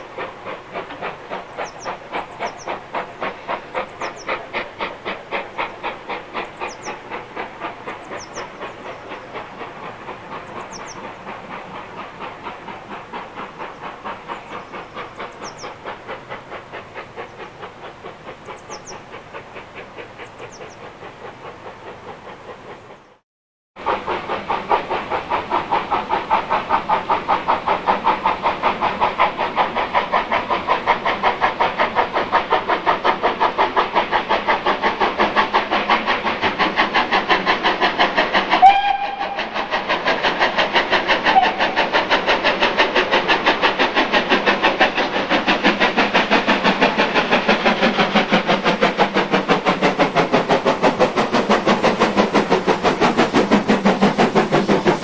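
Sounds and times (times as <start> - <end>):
steam locomotive chuffing: 0.0 - 23.2, 23.8 - 55.0
steam whistle toot: 38.6 - 39.6, 41.3 - 41.6.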